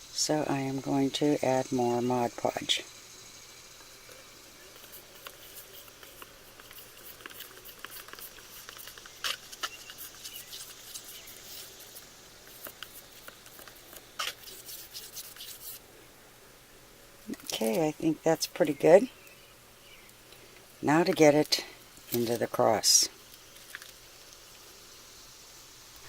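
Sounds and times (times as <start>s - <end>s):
stick stirring and scraping in container: 4.7s - 15.8s.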